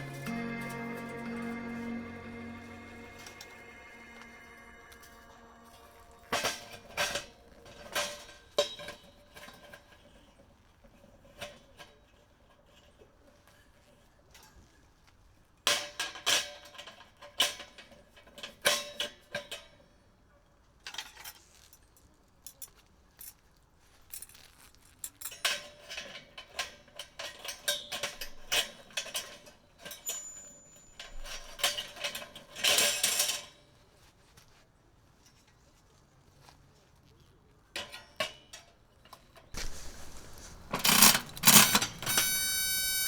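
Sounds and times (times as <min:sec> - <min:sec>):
clattering rustle: 0:22.6 - 0:42.3.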